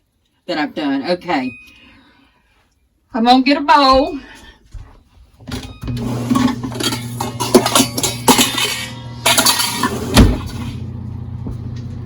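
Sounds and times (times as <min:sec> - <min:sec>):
dishes clinking and knocking: 0:05.5 - 0:10.7.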